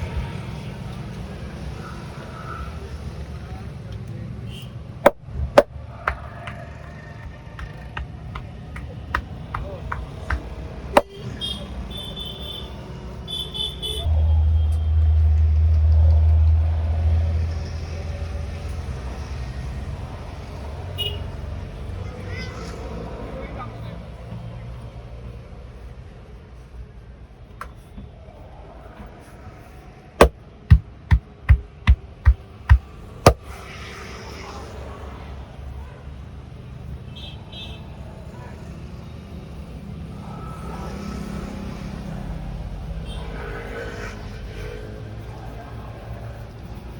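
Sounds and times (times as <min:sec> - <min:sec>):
sharp hand slaps with thuds: 0:07.6 - 0:11.1, 0:30.2 - 0:33.4
vehicle passing engine rumble: 0:14.1 - 0:23.6.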